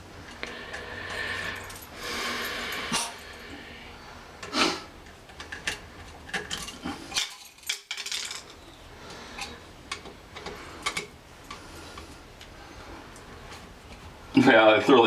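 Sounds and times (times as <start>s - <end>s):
metal scrape: 1.2s - 3.6s.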